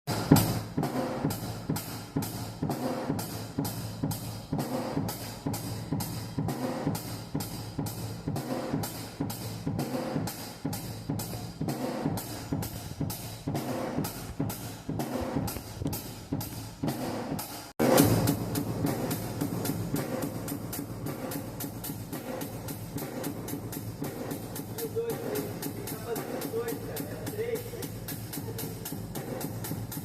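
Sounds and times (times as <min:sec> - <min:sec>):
cymbal strokes: 0:00.1 - 0:30.0
kick drum thumps: 0:11.3 - 0:17.0.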